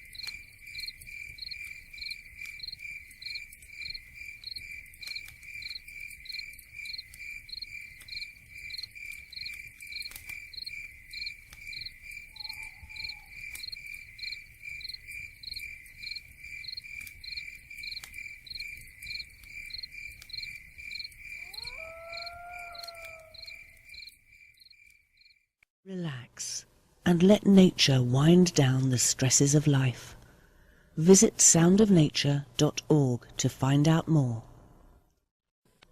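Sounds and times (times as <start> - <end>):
crickets chirping: 0.0 - 25.4.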